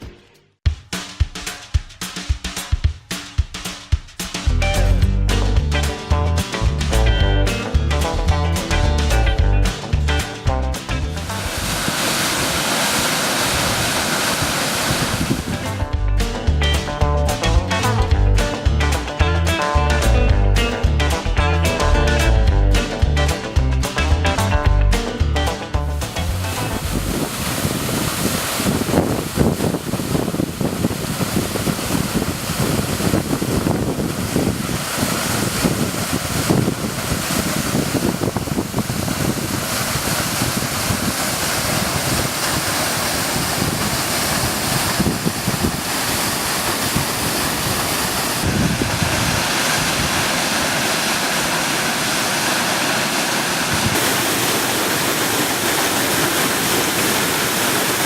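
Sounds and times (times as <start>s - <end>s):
waterfall rushing: 11.0s - 15.9s, 26.0s - 58.0s
wind gusting on microphone: 11.3s - 15.9s, 26.3s - 51.0s, 53.7s - 56.1s.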